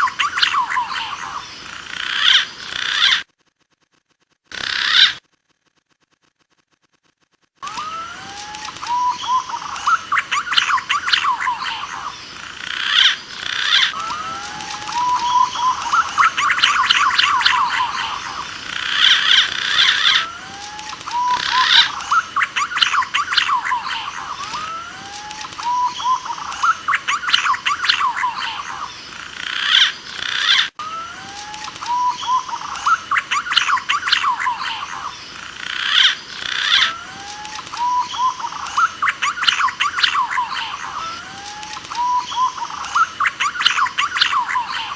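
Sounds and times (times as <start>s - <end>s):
pigeon calls whistling and warbling: 7.6s - 12.1s, 12.9s - 28.9s, 29.7s - 35.2s, 35.9s - 44.9s.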